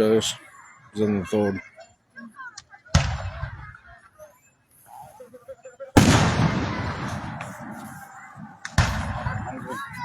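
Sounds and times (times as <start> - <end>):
firework boom with echo: 6.0 - 7.6.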